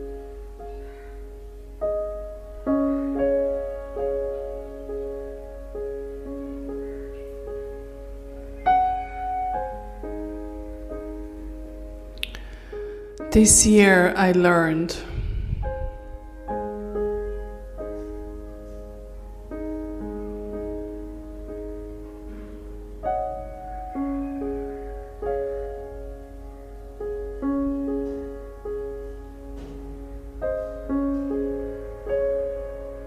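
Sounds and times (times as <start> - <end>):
soft piano music: 0.0 - 33.0.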